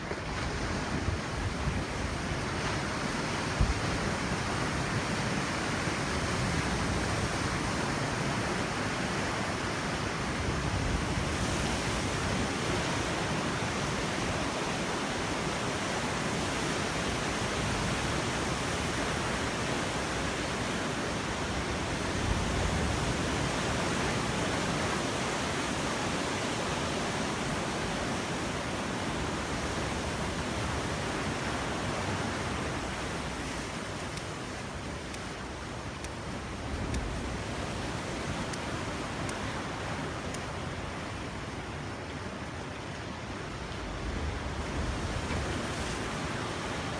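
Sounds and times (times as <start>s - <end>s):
ocean surf breaking on beach: 0.0s - 46.9s
wind: 0.0s - 46.9s.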